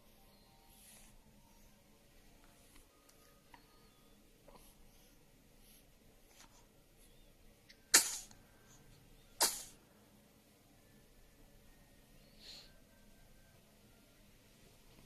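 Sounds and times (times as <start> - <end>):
baby sneezing: 7.9 - 8.3, 9.4 - 9.8.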